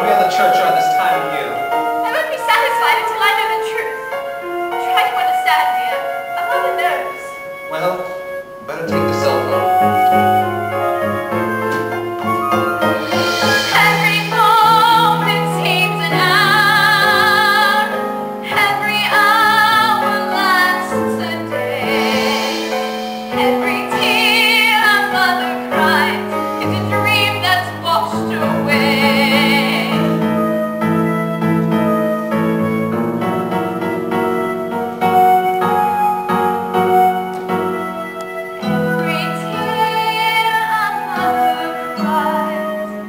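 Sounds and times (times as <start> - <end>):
piano accompaniment: 0.0 - 43.0
woman singing a ballad: 13.1 - 30.4, 38.6 - 43.0.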